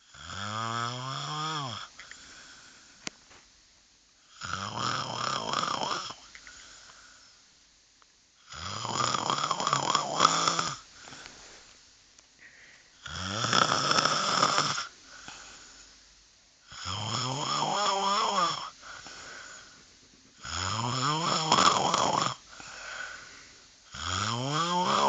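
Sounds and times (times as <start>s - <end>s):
person snoring loudly: 0.0s - 1.9s, 4.3s - 6.3s, 8.5s - 10.8s, 13.0s - 14.9s, 16.7s - 18.8s, 20.4s - 23.2s, 23.9s - 25.0s
quiet breaths: 0.0s - 25.0s.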